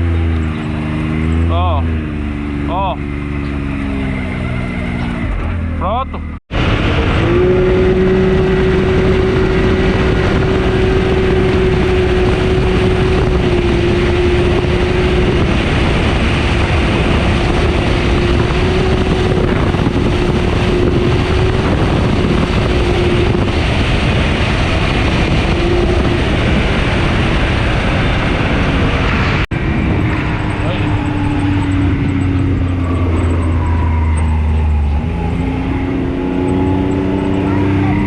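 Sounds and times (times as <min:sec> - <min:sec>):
road noise: 0:00.0 - 0:38.0
vehicle engine droning: 0:00.0 - 0:38.0
wind noise: 0:06.5 - 0:38.0.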